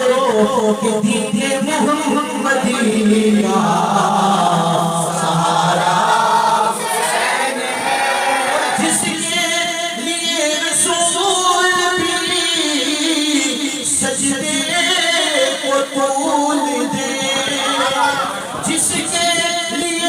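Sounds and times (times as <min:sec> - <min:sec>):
group of voices singing: 0:01.5 - 0:10.0.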